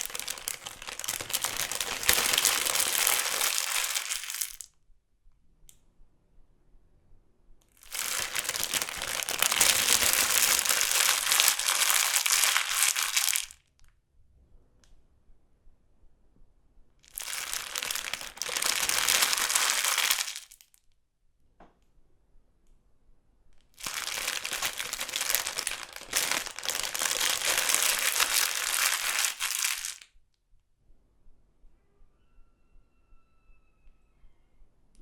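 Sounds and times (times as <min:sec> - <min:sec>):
chip bag crinkling: 0:00.0 - 0:04.7, 0:07.8 - 0:13.6, 0:17.1 - 0:20.6, 0:23.8 - 0:30.0
faint crackle: 0:00.0 - 0:04.7, 0:07.7 - 0:13.6, 0:17.1 - 0:20.8, 0:23.6 - 0:30.1.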